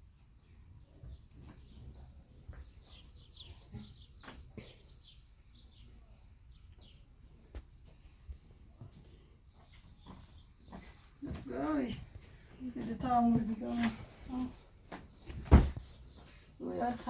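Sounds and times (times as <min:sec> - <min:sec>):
faint bird chirping: 0:00.0 - 0:11.9.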